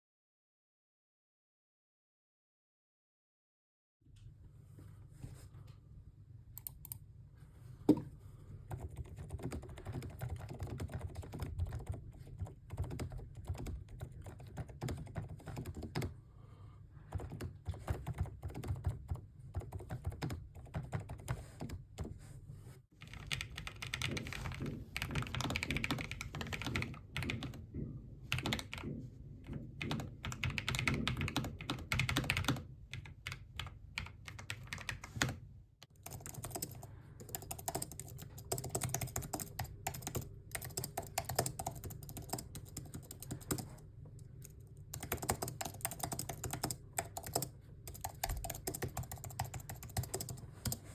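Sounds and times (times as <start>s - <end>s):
mechanical keyboard typing: 8.7s - 16.1s, 17.1s - 21.8s, 23.0s - 27.6s, 28.3s - 28.8s, 29.8s - 43.8s, 44.9s - 50.9s.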